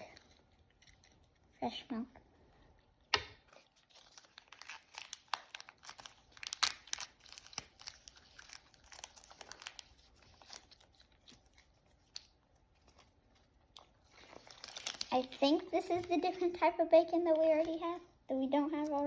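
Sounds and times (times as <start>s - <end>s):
plastic wrapper crinkling: 3.3s - 18.0s.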